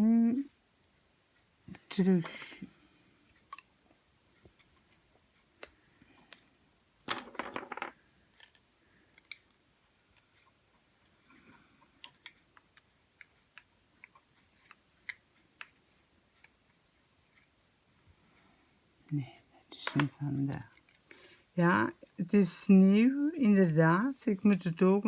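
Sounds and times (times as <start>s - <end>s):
plastic toys clicking and tapping: 1.8s - 2.7s, 3.4s - 3.7s, 4.4s - 17.5s, 19.7s - 21.3s.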